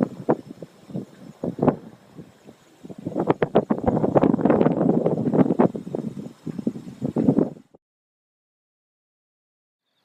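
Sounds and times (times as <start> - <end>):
wind buffeting microphone: 0.0 - 7.8.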